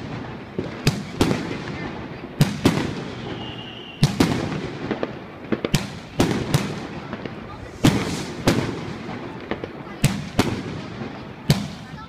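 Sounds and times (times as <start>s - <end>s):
firecracker bangs with echo: 0.0s - 12.0s
faint high whistle: 3.2s - 4.1s.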